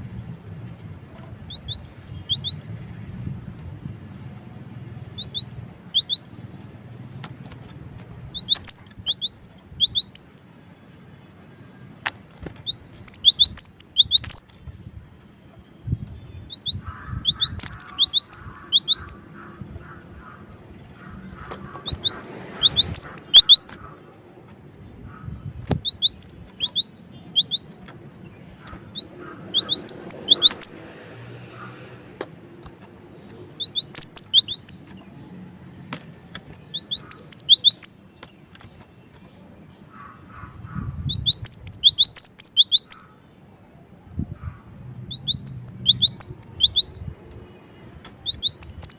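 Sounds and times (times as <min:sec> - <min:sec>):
bird singing high sharp notes: 0:01.5 - 0:02.8, 0:05.1 - 0:06.5, 0:08.3 - 0:10.6, 0:12.5 - 0:14.6, 0:15.9 - 0:19.3, 0:21.8 - 0:23.8, 0:25.6 - 0:30.8, 0:33.5 - 0:35.0, 0:36.4 - 0:38.7, 0:41.1 - 0:43.1, 0:45.0 - 0:47.2, 0:48.2 - 0:48.9.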